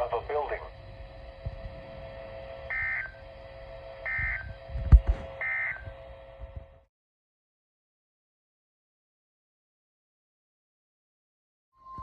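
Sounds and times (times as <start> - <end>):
steady hum: 0.0 - 6.8.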